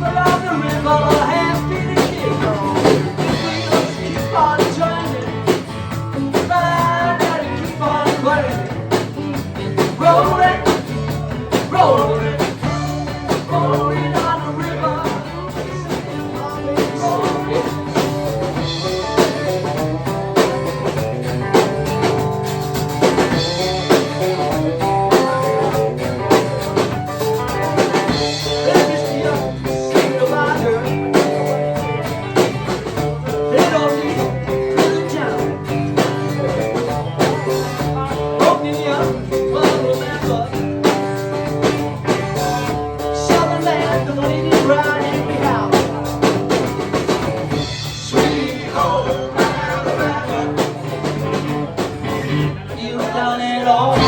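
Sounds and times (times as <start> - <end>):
lead guitar line: 0.0 - 54.0
live rock band playing: 0.0 - 54.0
person singing: 0.0 - 54.0.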